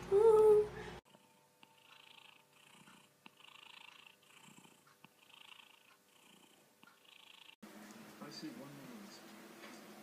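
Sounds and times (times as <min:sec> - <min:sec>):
cat purring faintly: 0:01.1 - 0:07.6.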